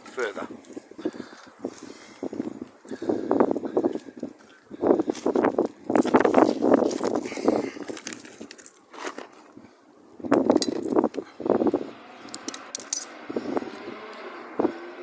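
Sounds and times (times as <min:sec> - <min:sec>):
metal parts clinking and rattling: 0:10.5 - 0:11.1, 0:12.2 - 0:13.1.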